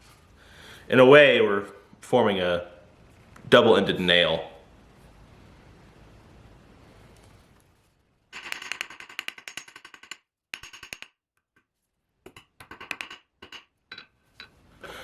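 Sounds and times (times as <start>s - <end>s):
hammer tapping wire on anvil: 8.4s - 14.6s.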